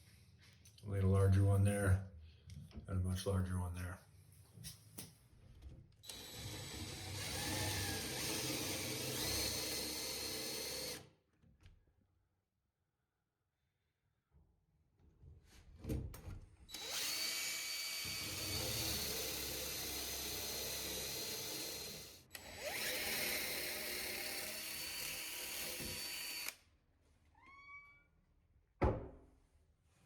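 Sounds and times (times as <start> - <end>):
power drill boring into wood: 6.1 - 11.1, 16.7 - 26.6.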